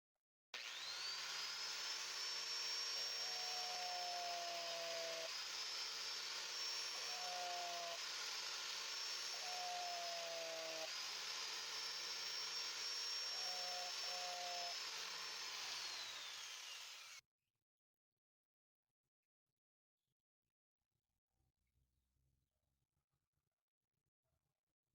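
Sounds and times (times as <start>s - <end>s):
drill bit against grinding wheel: 0.6s - 17.2s
electric grinder motor whine: 0.6s - 17.2s.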